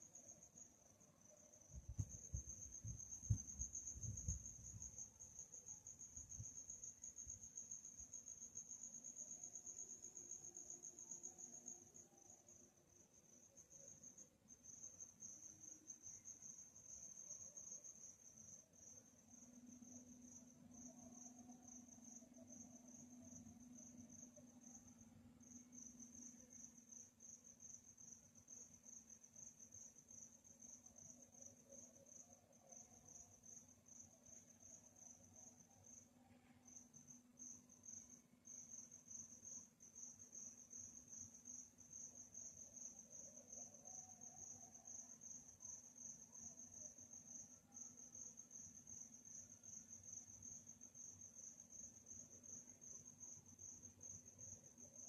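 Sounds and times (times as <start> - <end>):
crickets chirping: 0.0 - 55.0
faint low hum: 0.0 - 55.0.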